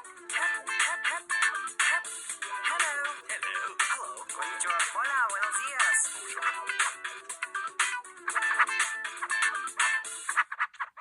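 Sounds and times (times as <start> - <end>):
electronic ringtone music: 0.0 - 10.5.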